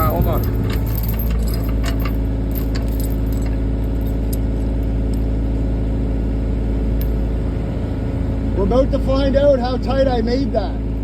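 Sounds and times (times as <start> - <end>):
faint metallic clinks: 0.0 - 4.4
diesel engine idling: 0.0 - 11.0.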